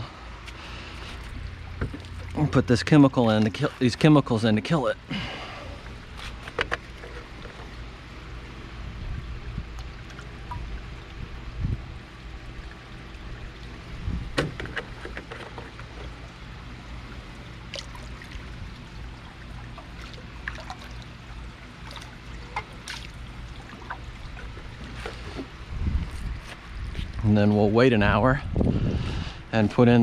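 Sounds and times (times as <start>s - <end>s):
low steady hum: 0.0s - 30.0s
liquid splashing into pool water: 0.7s - 4.0s, 9.5s - 25.7s.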